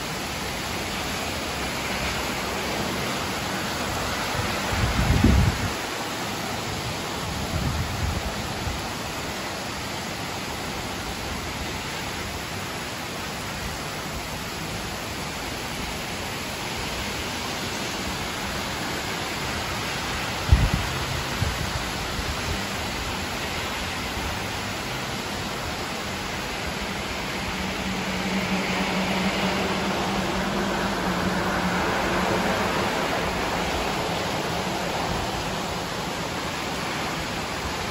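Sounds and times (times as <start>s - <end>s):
steady rain falling: 0.0s - 37.9s.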